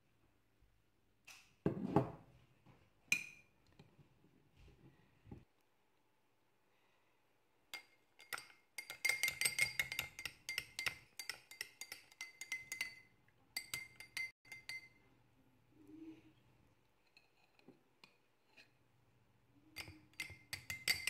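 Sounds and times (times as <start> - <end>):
spoon clinking in glass: 7.7 - 15.0, 19.8 - 21.0.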